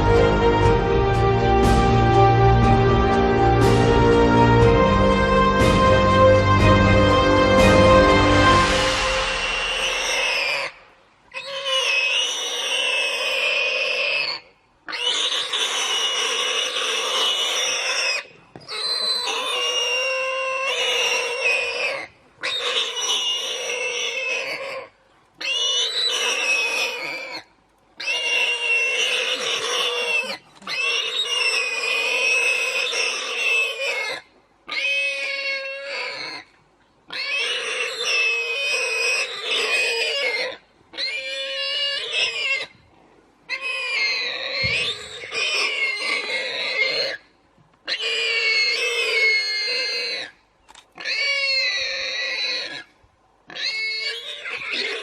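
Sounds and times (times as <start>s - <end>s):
animal cries high wavering: 8.7s - 36.5s, 37.1s - 42.8s, 43.5s - 47.2s, 47.9s - 50.4s, 51.0s - 52.9s, 53.5s - 55.0s.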